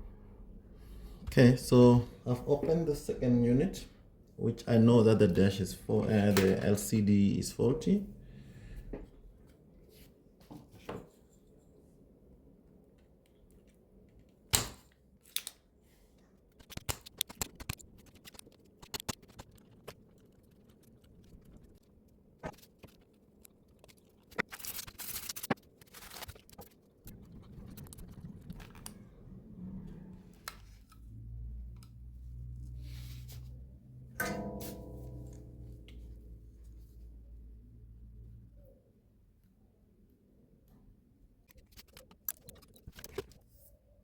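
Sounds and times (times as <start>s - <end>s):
small tools and plastic parts clicking: 41.4s - 43.4s.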